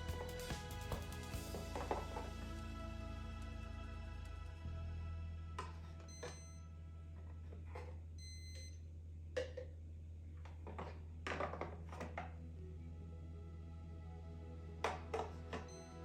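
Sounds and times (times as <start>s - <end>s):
low steady hum: 0.0s - 16.0s
short electronic beep: 6.0s - 6.7s.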